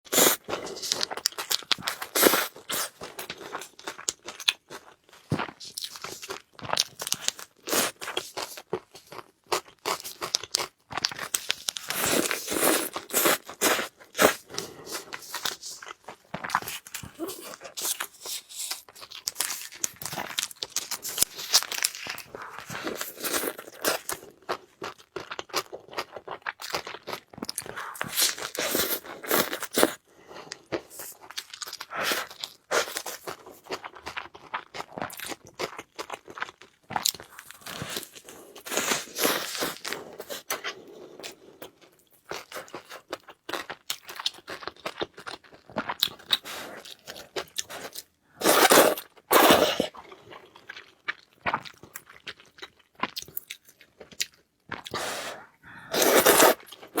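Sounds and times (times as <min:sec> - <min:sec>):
person chewing crunchy food: 0:00.0 - 0:57.0.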